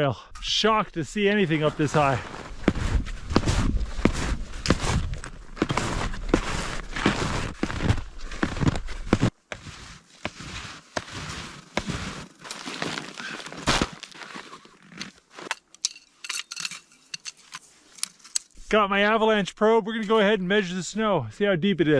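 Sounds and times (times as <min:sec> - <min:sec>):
footsteps crunching in snow: 0:00.9 - 0:15.5.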